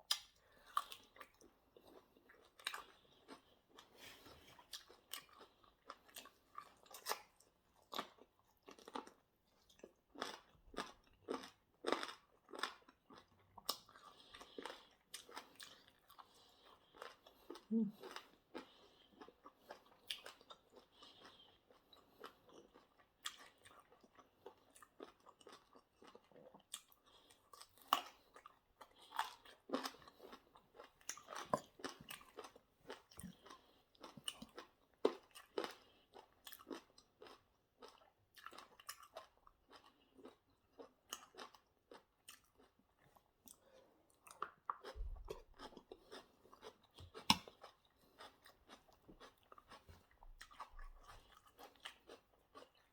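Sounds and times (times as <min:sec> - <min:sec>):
wet chewing: 0:41.1 - 0:52.9.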